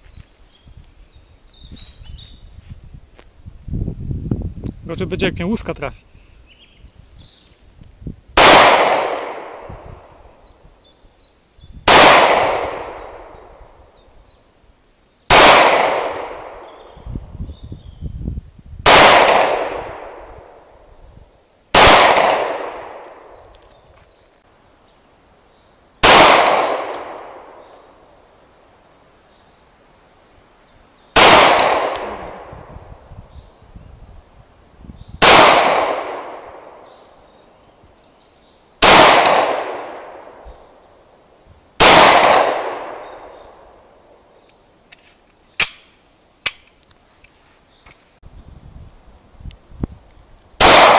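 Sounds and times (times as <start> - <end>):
pistol shots with echo: 8.4 - 9.8, 11.9 - 13.5, 15.3 - 16.8, 18.8 - 20.6, 21.7 - 23.4, 26.0 - 27.7, 31.2 - 32.6, 35.2 - 36.8, 38.8 - 40.4, 41.8 - 43.6, 50.6 - 50.9.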